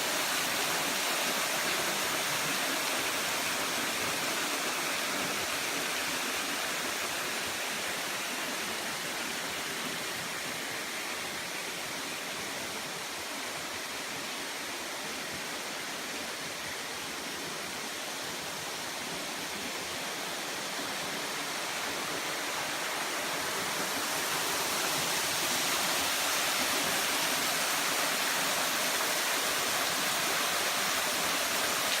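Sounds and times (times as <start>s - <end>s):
waterfall rushing: 16.4s - 32.0s.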